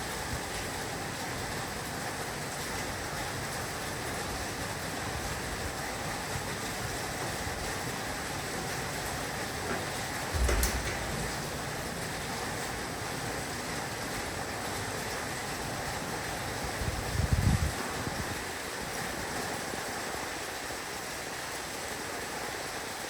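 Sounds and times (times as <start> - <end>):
heavy rain on a roof: 0.0 - 23.0
low rumble: 10.4 - 12.5.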